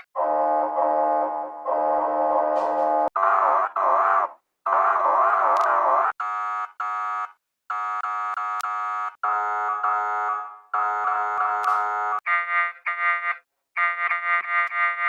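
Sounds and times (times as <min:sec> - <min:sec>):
siren blasts: 0:00.0 - 0:15.0
warbling siren: 0:00.2 - 0:06.2, 0:09.2 - 0:15.0.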